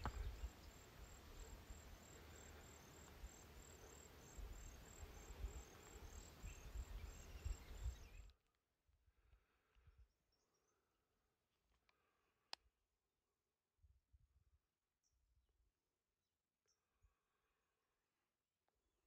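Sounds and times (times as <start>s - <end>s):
insect chirping: 0.0s - 8.3s.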